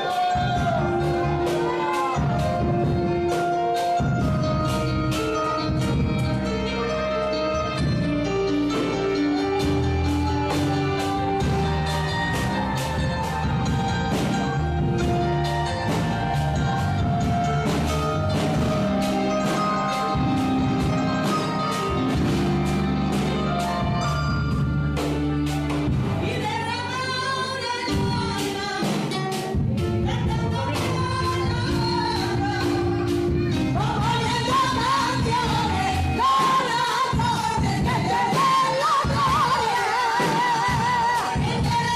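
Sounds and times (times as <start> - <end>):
person singing with vibrato: 0.0 - 4.3, 26.2 - 41.9
instrumental accompaniment with beat: 0.0 - 41.9.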